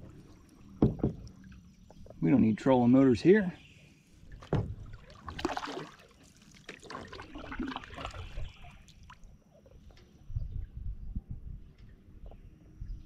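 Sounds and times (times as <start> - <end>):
paddle splashing water: 0.0 - 3.0, 3.6 - 10.0
short knocks: 0.8 - 1.3.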